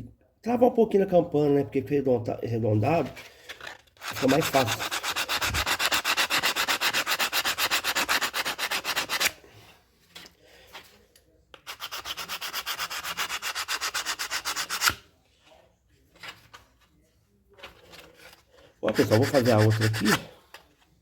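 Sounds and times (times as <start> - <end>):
sandpaper rubbing brake lining: 19.0 - 20.2.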